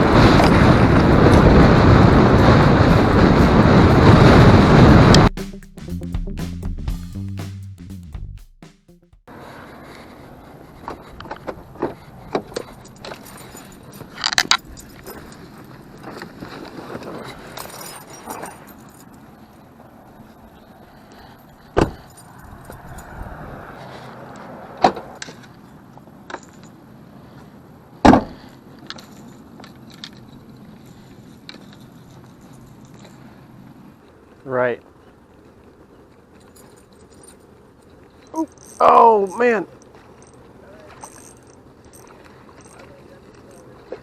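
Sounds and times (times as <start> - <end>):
wind on microphone: 0.0 - 5.3, 21.8 - 24.7.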